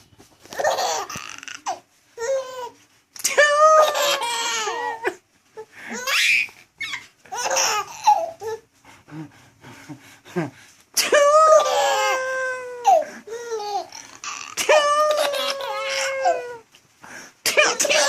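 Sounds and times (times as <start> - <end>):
baby laughing: 0.6 - 2.7, 3.3 - 5.2, 5.9 - 8.6, 11.0 - 16.6
adult sneezing: 17.4 - 18.0.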